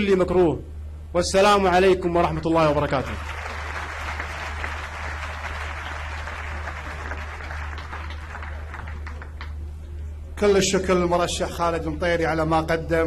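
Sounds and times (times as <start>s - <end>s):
audience applauding: 2.9s - 9.6s.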